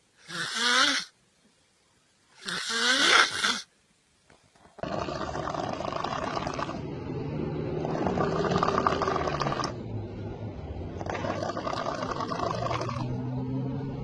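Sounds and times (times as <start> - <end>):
person snoring heavily: 0.2 - 1.1, 2.4 - 3.7, 4.8 - 9.8, 11.0 - 13.2.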